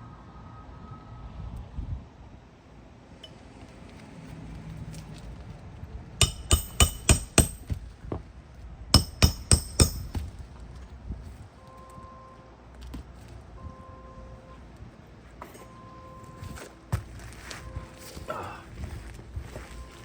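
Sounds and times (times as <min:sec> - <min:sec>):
hammer striking nails: 0:06.2 - 0:07.9, 0:09.0 - 0:10.3.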